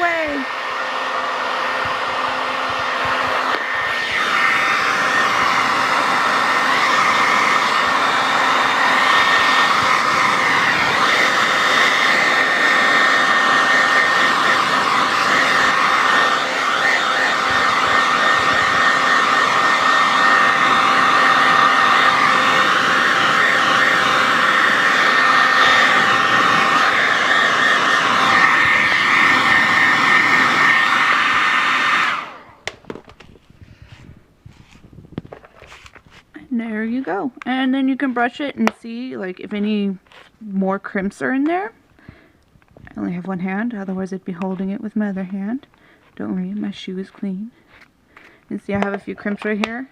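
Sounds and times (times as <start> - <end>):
hair dryer running: 0.0 - 40.2, 48.5 - 49.9.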